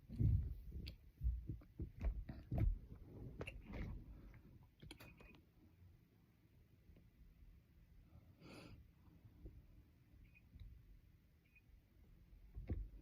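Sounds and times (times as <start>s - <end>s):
soft low thumps: 0.0s - 4.2s.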